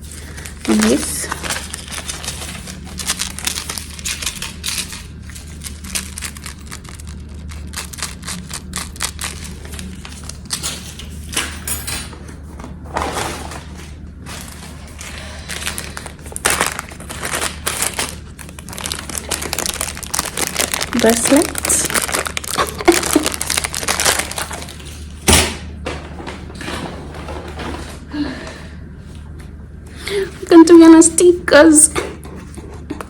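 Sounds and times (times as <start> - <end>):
plastic packaging crinkling: 0.0 - 11.3, 12.9 - 25.2
steady low hum: 0.0 - 33.0.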